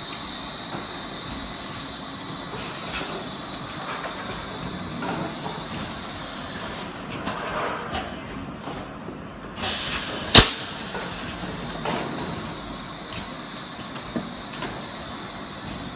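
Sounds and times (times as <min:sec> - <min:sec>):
air hiss bursts: 0:00.0 - 0:07.1, 0:09.6 - 0:11.4
blow-moulding machine running: 0:00.0 - 0:07.4, 0:09.6 - 0:15.9.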